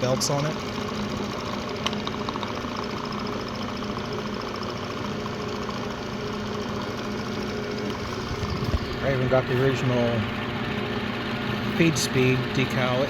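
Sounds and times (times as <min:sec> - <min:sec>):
brake lathe humming: 0:00.0 - 0:13.0.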